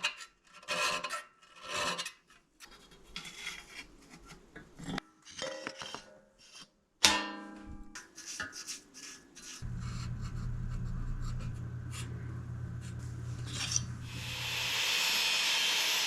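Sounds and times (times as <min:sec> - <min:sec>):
metal scraping and rubbing: 0:08.2 - 0:16.0
low hum: 0:09.6 - 0:16.0.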